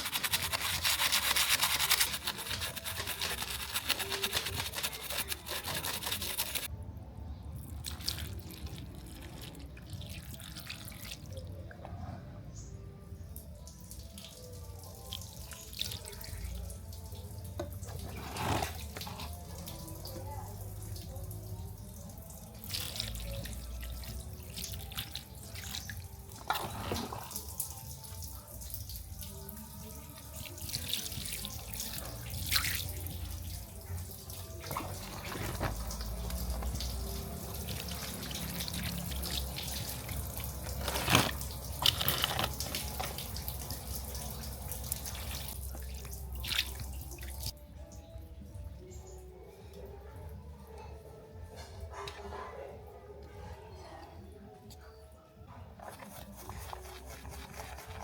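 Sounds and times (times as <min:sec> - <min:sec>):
water running and splashing: 0:00.0 - 0:06.7, 0:29.0 - 0:47.6, 0:55.8 - 0:58.0.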